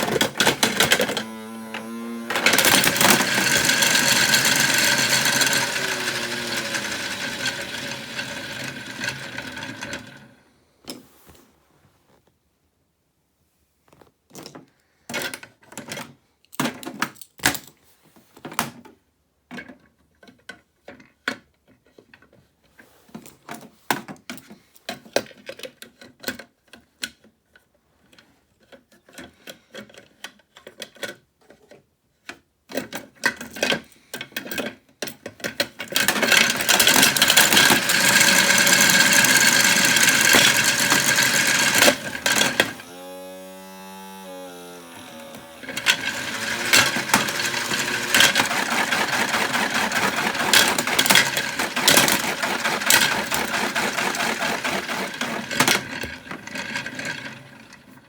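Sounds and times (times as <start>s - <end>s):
plastic pieces rattling in toy drum: 0.0s - 1.3s, 2.3s - 10.1s, 34.4s - 42.9s, 45.0s - 57.8s
toy washing machine hum: 0.0s - 10.4s, 35.8s - 58.0s.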